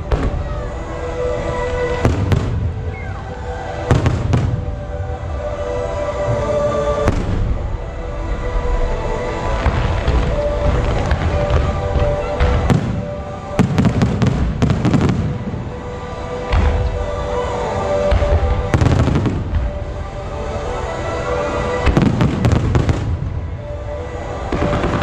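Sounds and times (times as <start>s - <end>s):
music playing: 0.0s - 25.0s
firework crackling: 8.5s - 20.4s, 21.6s - 23.6s, 24.2s - 25.0s.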